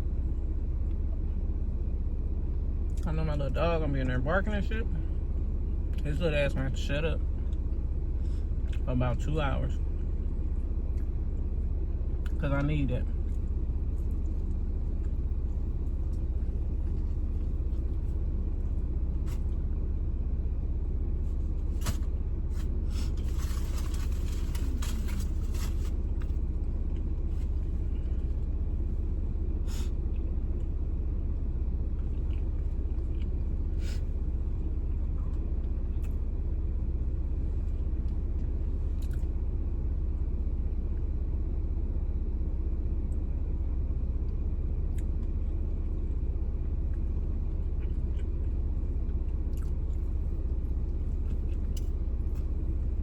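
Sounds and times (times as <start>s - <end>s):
car cabin engine rumble: 0.0s - 53.0s
rustling: 21.7s - 26.3s.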